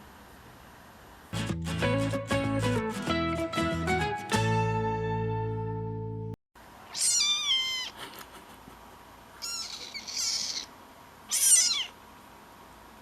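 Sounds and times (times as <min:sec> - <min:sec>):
kitten meowing: 0:06.9 - 0:08.0, 0:09.4 - 0:10.7, 0:11.3 - 0:12.0.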